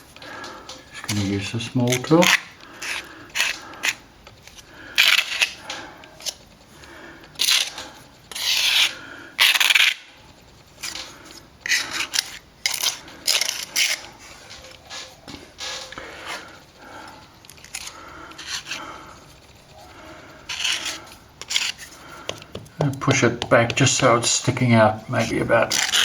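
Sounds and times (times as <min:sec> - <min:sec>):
plastering tool scraping: 0:07.4 - 0:26.0.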